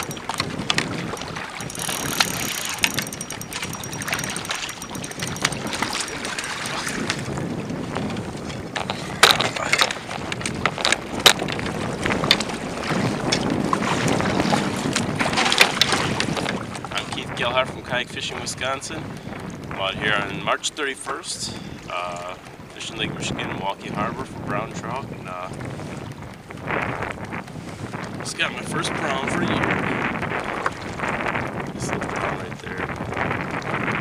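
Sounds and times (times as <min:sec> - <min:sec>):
sharp knocks and clicks: 0:00.0 - 0:07.2
wind on microphone: 0:00.0 - 0:20.7, 0:21.5 - 0:34.0
water around a kayak: 0:00.0 - 0:34.0.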